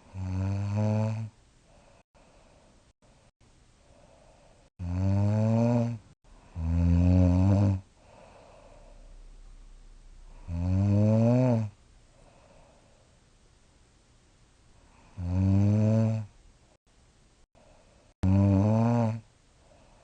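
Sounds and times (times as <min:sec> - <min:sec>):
woman snoring: 0:00.0 - 0:01.3, 0:04.7 - 0:09.1, 0:10.3 - 0:11.8, 0:15.0 - 0:16.3, 0:18.2 - 0:19.8
faint breathing: 0:01.6 - 0:04.8, 0:07.9 - 0:09.6, 0:12.0 - 0:13.3, 0:17.5 - 0:18.2, 0:19.5 - 0:20.0.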